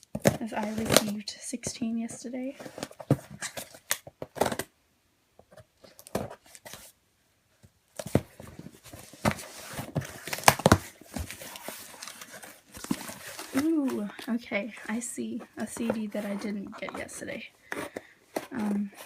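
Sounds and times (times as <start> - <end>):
packing material tearing and crinkling: 9.2 - 14.2.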